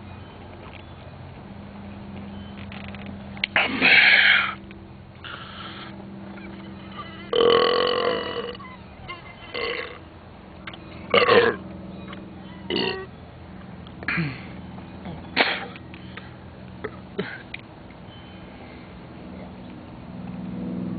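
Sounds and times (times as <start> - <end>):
person belching: 7.3 - 8.6, 11.2 - 11.6, 12.7 - 13.1.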